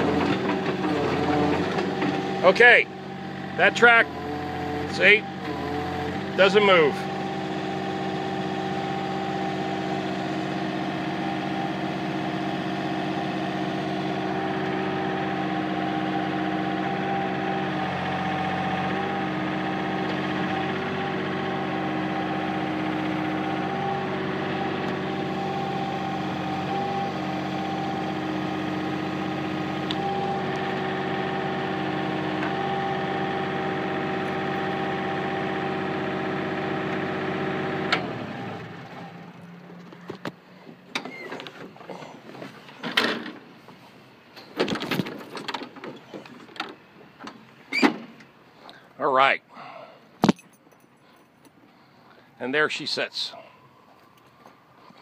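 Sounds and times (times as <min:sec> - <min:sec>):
excavator diesel engine running: 0:00.0 - 0:44.3.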